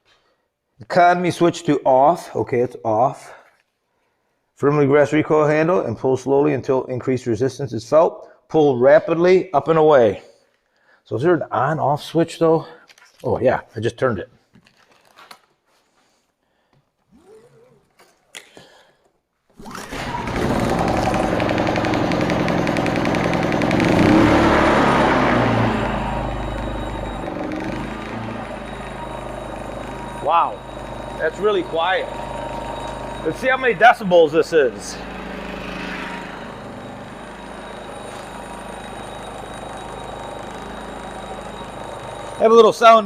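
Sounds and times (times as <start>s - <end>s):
generator engine running: 19.6s - 43.0s
thin steady high tone: 25.7s - 43.0s.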